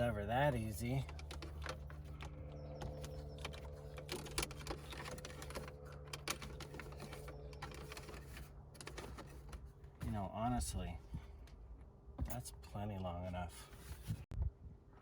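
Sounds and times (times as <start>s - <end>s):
cable clicks and rustles: 0.0s - 10.2s
steady low hum: 0.0s - 15.0s.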